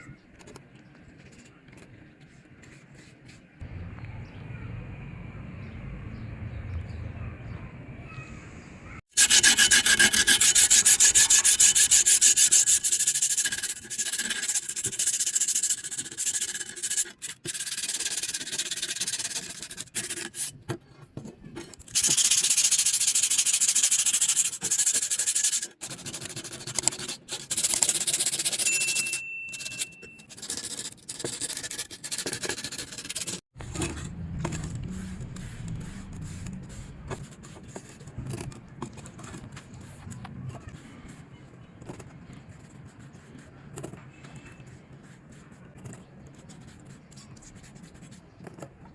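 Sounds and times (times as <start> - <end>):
sanding rusty steel blade: 9.2 - 20.5.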